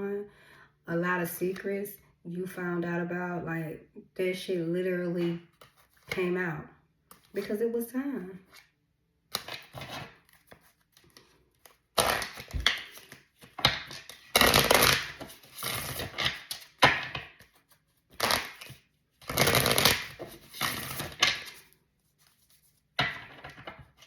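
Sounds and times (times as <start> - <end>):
cards being shuffled: 9.3 - 24.0.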